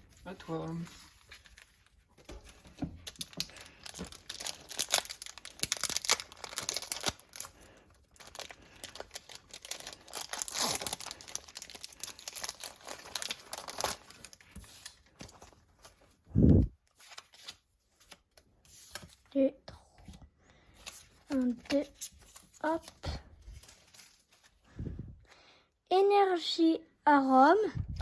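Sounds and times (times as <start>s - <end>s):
foil wrapper tearing and crinkling: 3.0s - 15.5s.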